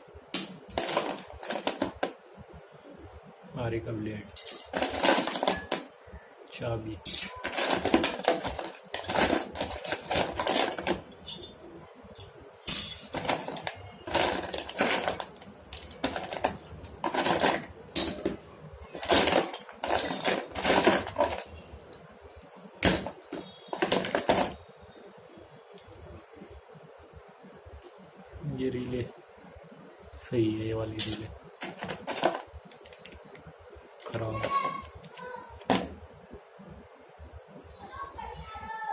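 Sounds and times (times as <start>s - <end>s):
metal tools clinking: 0.3s - 2.1s, 4.4s - 6.0s, 7.0s - 24.6s, 31.0s - 32.5s.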